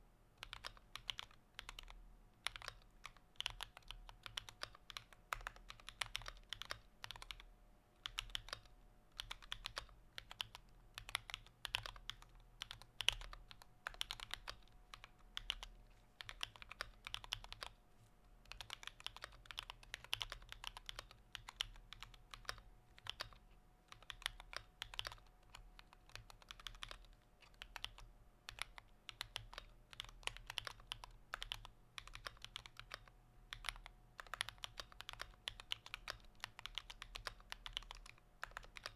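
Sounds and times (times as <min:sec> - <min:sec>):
faint steady hum: 0:00.0 - 0:38.9
typing on computer keyboard: 0:00.4 - 0:17.8, 0:18.4 - 0:38.9.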